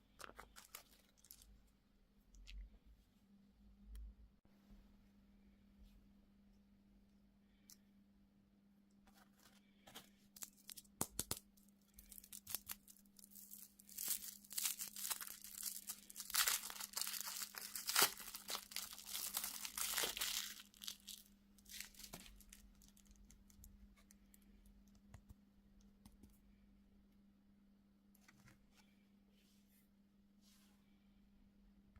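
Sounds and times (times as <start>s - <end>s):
candy wrapper tearing and crinkling: 10.4s - 23.7s.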